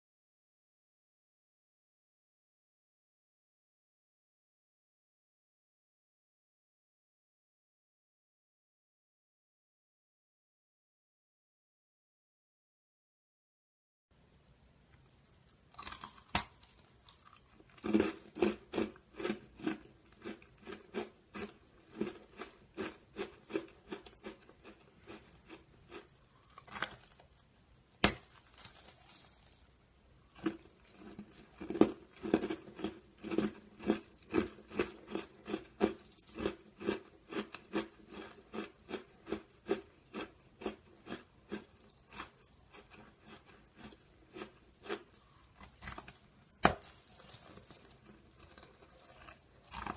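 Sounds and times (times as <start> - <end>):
chewing and crunching: 15.7 - 49.9.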